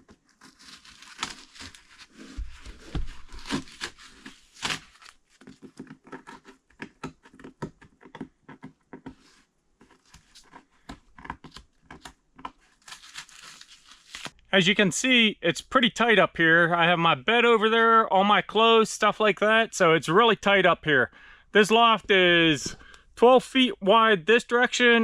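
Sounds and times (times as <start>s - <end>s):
crinkling and tearing: 0.0s - 14.4s.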